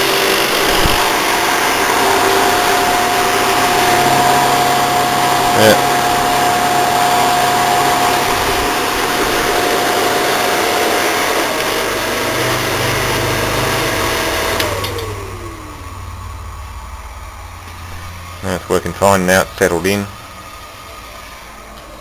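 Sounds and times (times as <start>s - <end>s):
window air conditioner fan and airflow: 0.0s - 22.0s
low compressor hum: 11.8s - 22.0s.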